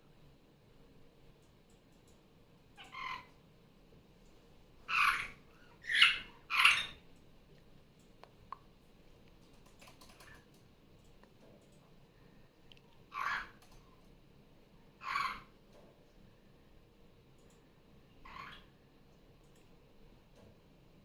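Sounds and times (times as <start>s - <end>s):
faint clicks: 1.4s - 2.2s, 7.2s - 11.9s, 13.6s - 14.1s, 17.3s - 17.7s, 19.1s - 20.6s
parrot calling: 2.8s - 3.4s, 4.9s - 7.0s, 13.1s - 13.6s, 15.0s - 15.5s, 18.2s - 18.7s.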